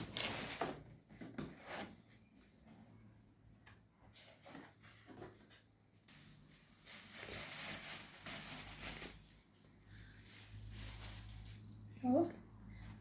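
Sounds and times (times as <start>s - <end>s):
packaging rustling: 6.0s - 11.8s.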